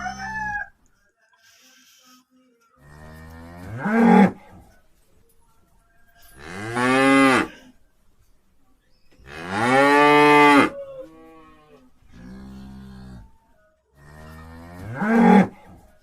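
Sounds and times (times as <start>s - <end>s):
cattle mooing: 6.4s - 7.7s, 14.0s - 15.6s.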